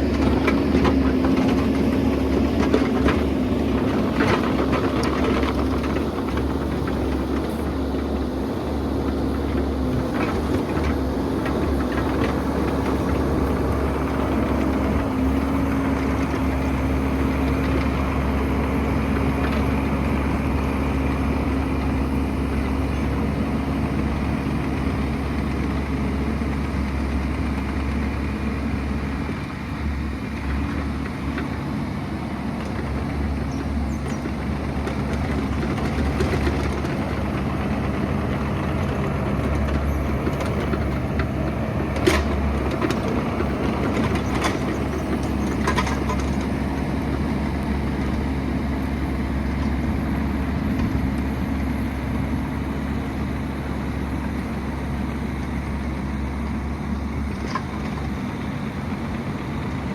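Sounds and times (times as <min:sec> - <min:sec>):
excavator diesel engine running: 0:00.0 - 0:59.9.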